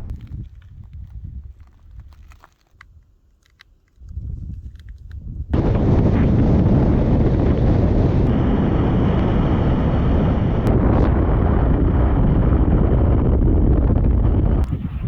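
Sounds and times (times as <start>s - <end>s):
wind buffeting microphone: 0.0s - 2.4s, 4.0s - 15.0s
faint whine: 5.6s - 15.0s.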